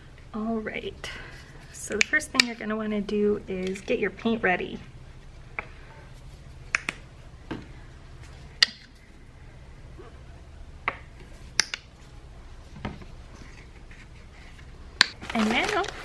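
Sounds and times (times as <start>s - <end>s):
low steady hum: 0.0s - 16.0s.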